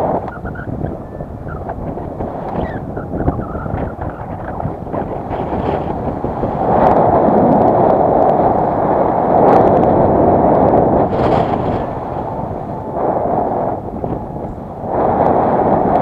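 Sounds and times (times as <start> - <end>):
strong wind buffeting microphone: 0.0 - 16.0.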